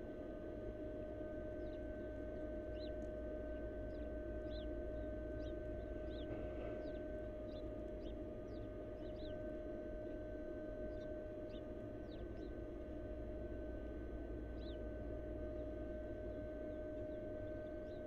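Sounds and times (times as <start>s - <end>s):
electrical hum and low rumble: 0.0s - 18.0s
small birds chirping: 1.6s - 2.1s, 2.7s - 3.1s, 3.9s - 9.4s, 10.9s - 12.5s, 14.6s - 14.8s.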